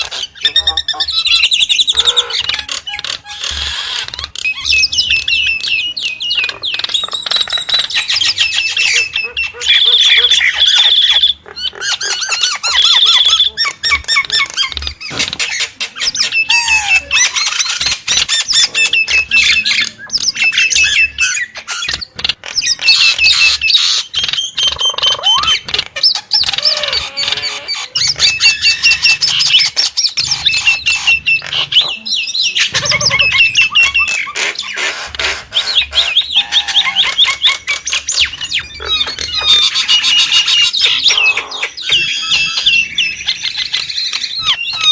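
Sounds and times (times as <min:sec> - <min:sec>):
sharp bird clicks: 0:00.0 - 0:27.2
myna whistles and squawks: 0:00.0 - 0:44.9.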